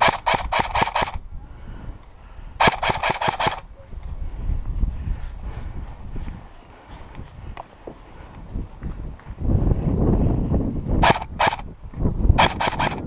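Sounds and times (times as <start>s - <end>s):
airsoft gun shots: 0.0s - 1.2s, 2.6s - 3.6s, 11.0s - 11.6s, 12.4s - 13.0s
wind rumble on microphone: 0.0s - 13.0s.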